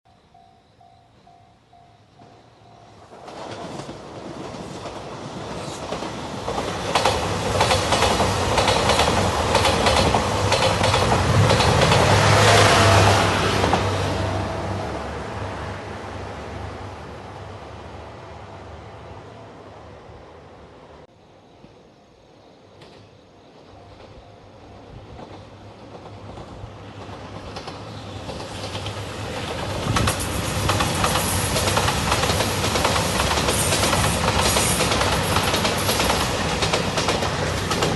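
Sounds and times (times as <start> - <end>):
train passing: 0.1 - 37.9
wheels clicking over rail joints: 3.1 - 12.4, 25.1 - 37.9.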